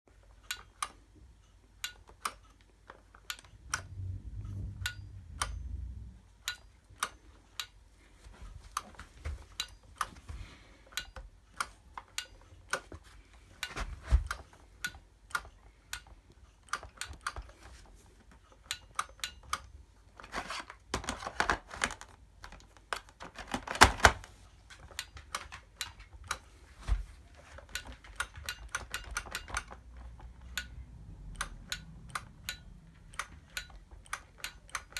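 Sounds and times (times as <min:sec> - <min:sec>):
low rumble: 0:03.6 - 0:06.4.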